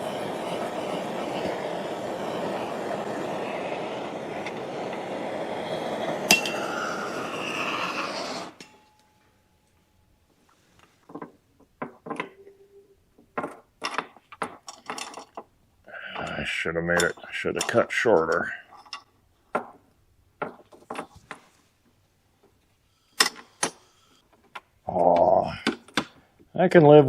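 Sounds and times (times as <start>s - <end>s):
heat gun blowing: 0.0s - 8.8s.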